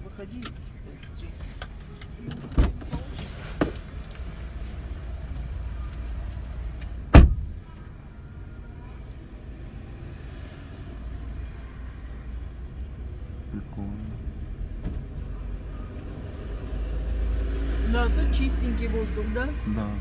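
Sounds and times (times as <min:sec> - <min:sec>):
car door slamming: 0:07.0 - 0:07.7.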